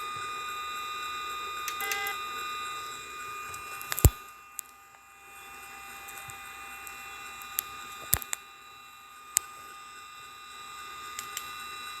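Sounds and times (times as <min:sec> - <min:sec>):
crackling clicks: 0:03.8 - 0:04.8, 0:06.1 - 0:08.5, 0:11.2 - 0:11.5.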